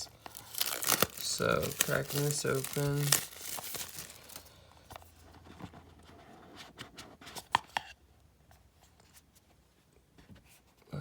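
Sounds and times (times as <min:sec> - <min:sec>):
cardboard box being handled: 0:00.2 - 0:07.6.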